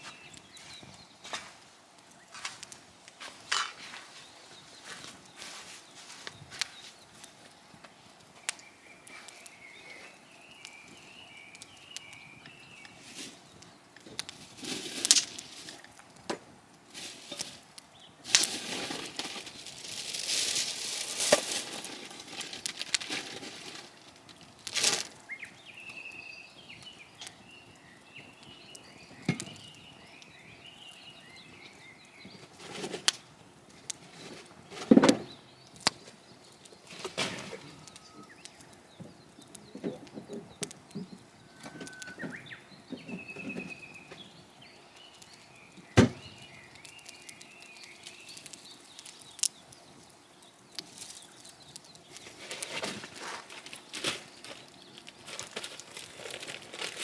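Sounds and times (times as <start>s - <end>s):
rustling: 0.0s - 16.1s, 16.8s - 57.0s
faint birdsong: 0.0s - 57.0s
thump: 46.0s - 46.3s.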